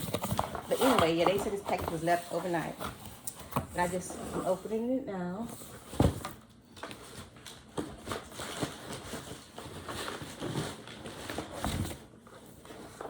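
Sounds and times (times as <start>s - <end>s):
cardboard box rustling: 0.0s - 4.8s, 5.5s - 13.0s.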